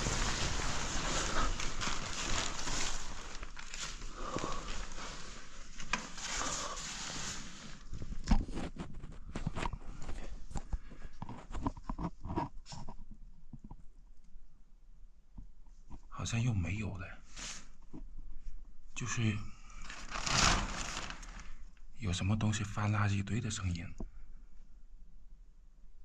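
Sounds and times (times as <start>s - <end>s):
rustling: 0.0s - 13.2s, 19.6s - 21.9s.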